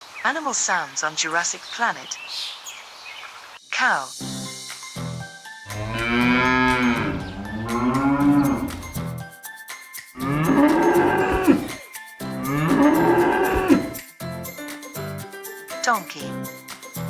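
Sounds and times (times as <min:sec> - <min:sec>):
cow mooing: 0:05.7 - 0:09.0, 0:10.2 - 0:11.8, 0:12.4 - 0:14.0.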